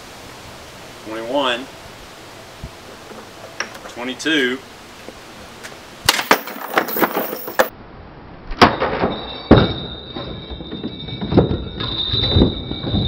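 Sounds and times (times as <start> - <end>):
bricks clattering and knocking: 6.1 - 7.7.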